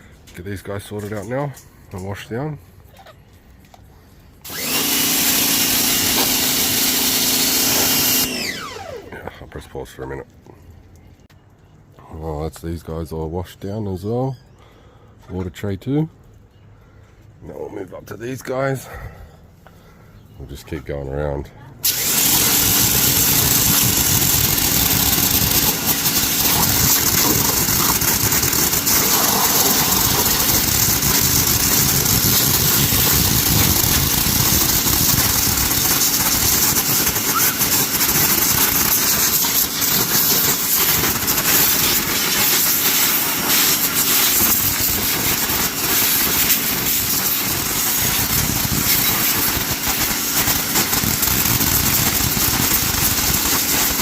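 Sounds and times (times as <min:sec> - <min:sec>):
pressure washer motor humming: 0:04.4 - 0:09.3, 0:21.8 - 0:54.0
water jet hissing: 0:21.8 - 0:54.0.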